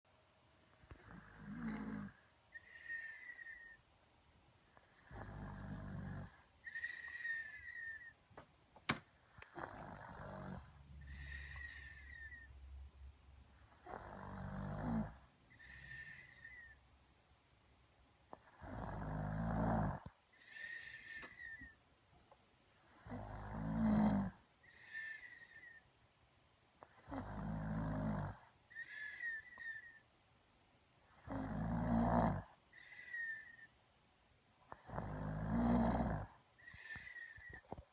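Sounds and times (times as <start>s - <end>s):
loud snoring: 0.9s - 3.6s, 4.9s - 8.0s, 9.4s - 12.5s, 13.7s - 16.7s, 18.4s - 21.7s, 23.0s - 25.4s, 27.0s - 29.8s, 31.2s - 33.4s, 34.7s - 37.6s
person snoring with whistle: 18.6s - 20.6s, 23.1s - 25.8s, 31.2s - 32.4s, 34.8s - 37.6s.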